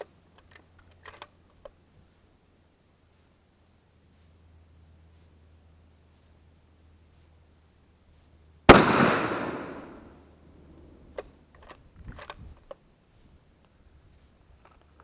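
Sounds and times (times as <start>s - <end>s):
metallic clicks of rifle bolt: 0.4s - 1.4s, 11.2s - 12.8s
rifle shot with echo: 8.7s - 10.2s.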